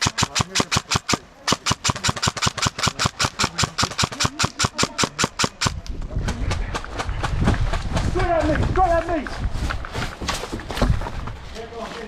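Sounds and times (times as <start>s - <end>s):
airsoft rifle automatic fire: 0.0s - 5.8s.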